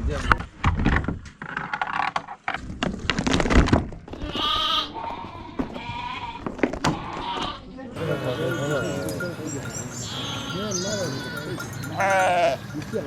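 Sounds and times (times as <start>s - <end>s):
sheep bleating: 4.2s - 9.2s, 9.9s - 12.7s.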